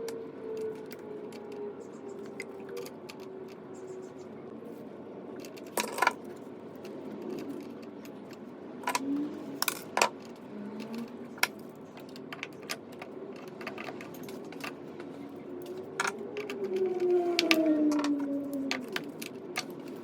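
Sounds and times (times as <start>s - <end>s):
hand tools clicking and tapping: 6.8s - 20.0s.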